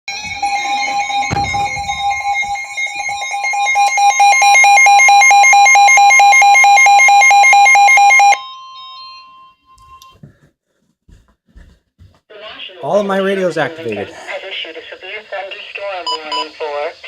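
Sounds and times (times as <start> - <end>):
steady warning alarm tone: 0.1 - 10.2
rapid pulsing beep: 0.4 - 10.2.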